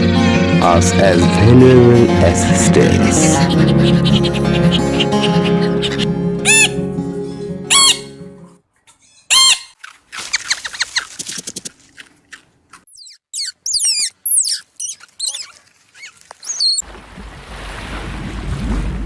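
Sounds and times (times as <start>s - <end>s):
animal squeaks and chirps: 3.3s - 6.8s, 7.7s - 8.2s, 9.0s - 11.7s, 12.9s - 16.8s.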